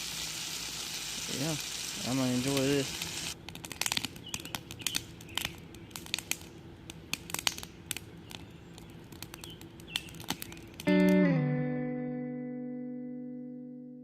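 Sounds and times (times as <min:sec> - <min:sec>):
food frying in a pan: 0:00.0 - 0:03.4
sharp pops and crackles: 0:02.4 - 0:11.3.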